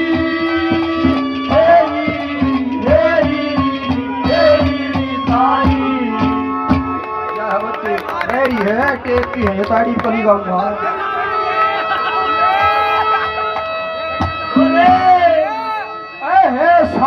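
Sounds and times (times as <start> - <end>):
hand-drum strokes: 0.0 - 7.0, 13.4 - 15.7
sliding melody line: 10.7 - 16.3.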